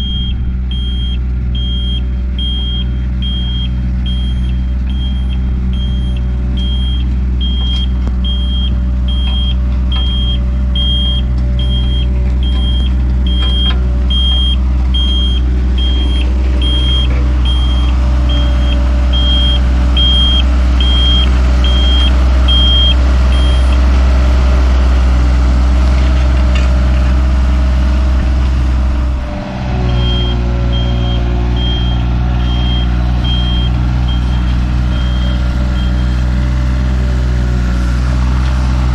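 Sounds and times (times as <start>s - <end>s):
reversing alarm beeping: 0.0s - 23.8s, 29.8s - 36.4s
diesel engine running: 0.0s - 38.9s.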